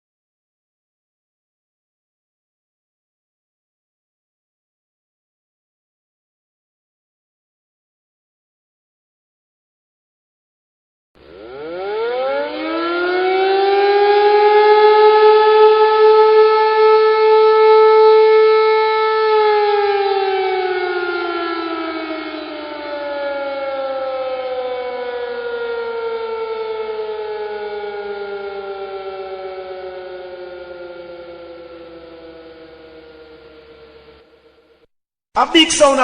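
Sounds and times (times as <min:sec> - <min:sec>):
air-raid siren wailing: 0:11.2 - 0:34.9.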